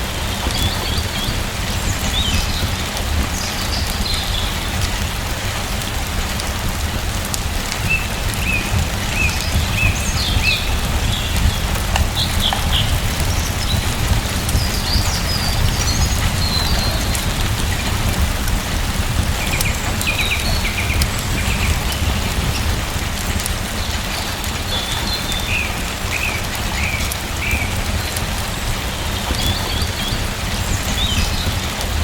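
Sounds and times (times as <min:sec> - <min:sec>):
birds chirping: 0:00.0 - 0:32.0
steady rain: 0:00.0 - 0:32.0.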